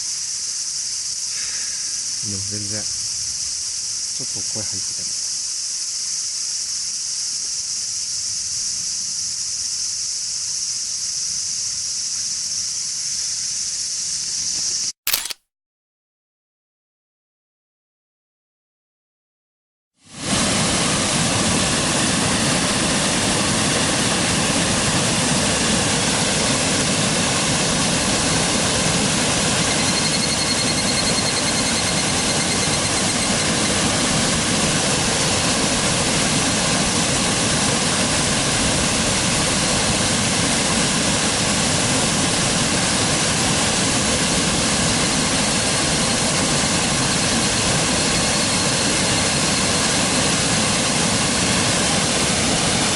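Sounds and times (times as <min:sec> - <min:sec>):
river rushing: 0:47.8 - 0:52.9.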